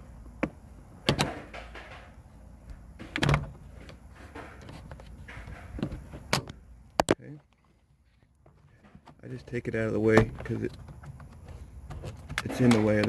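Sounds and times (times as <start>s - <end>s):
plastic cover clicking and scraping: 10.4s - 13.0s.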